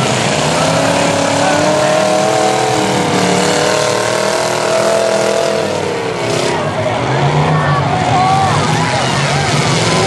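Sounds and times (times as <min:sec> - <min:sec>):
car engines revving: 0:00.0 - 0:10.0.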